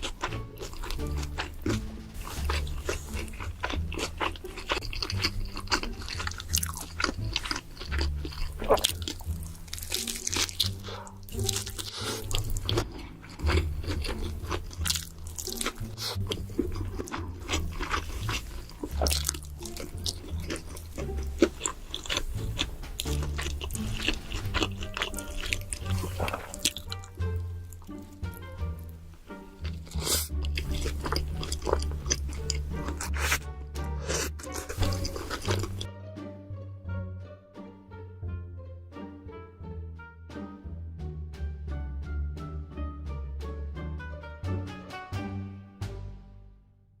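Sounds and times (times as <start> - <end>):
crunchy chewing: 0.0 - 28.2, 29.5 - 35.9
background music with bass: 0.0 - 47.0.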